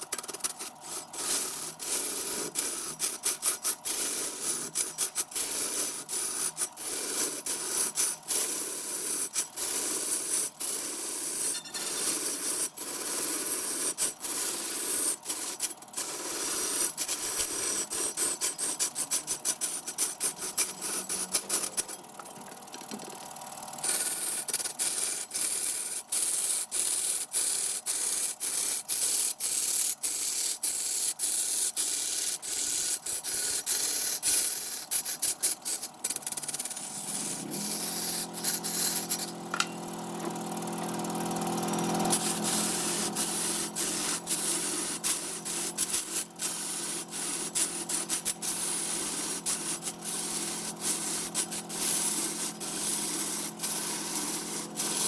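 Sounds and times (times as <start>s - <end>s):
wood sanding rasp: 28.4s - 39.3s
low machine hum: 36.8s - 47.8s.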